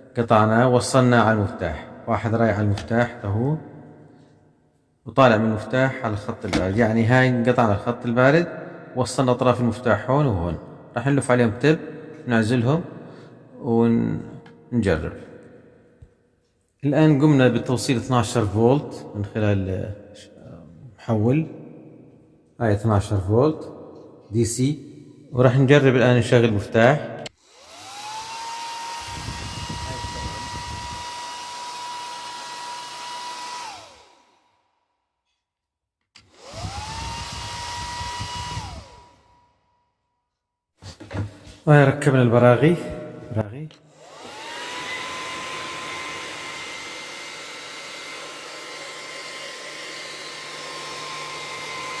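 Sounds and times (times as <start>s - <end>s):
vacuum cleaner motor whine: 27.4s - 34.3s, 36.2s - 39.3s, 43.9s - 52.0s.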